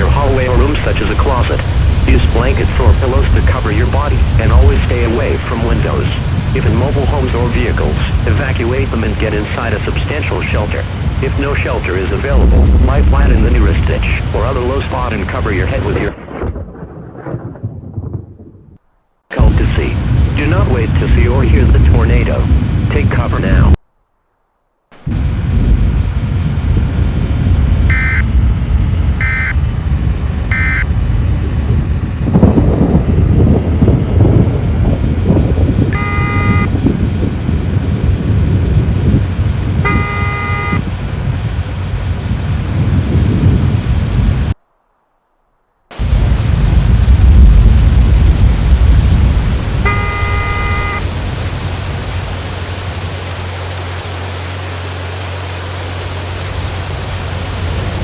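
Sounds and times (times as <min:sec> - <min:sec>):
heavy rain: 0:00.0 - 0:17.2, 0:19.3 - 0:23.8, 0:24.9 - 0:58.0
storm rumbling: 0:00.0 - 0:23.8, 0:24.9 - 0:58.0
brief pitched tone: 0:27.9 - 0:28.3, 0:29.2 - 0:29.6, 0:30.5 - 0:30.9, 0:35.9 - 0:36.8, 0:39.9 - 0:40.8, 0:49.8 - 0:51.0
short electronic beeps: 0:27.9 - 0:28.3, 0:29.2 - 0:29.6, 0:30.5 - 0:30.9, 0:36.0 - 0:36.8, 0:39.9 - 0:40.8, 0:49.9 - 0:51.0.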